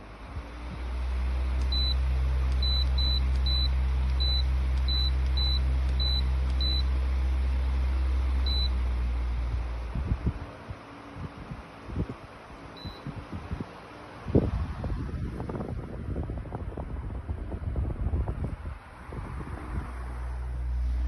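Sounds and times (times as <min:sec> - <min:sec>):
fan humming: 0:00.0 - 0:21.0
short high beeps: 0:08.4 - 0:08.8, 0:12.8 - 0:13.1.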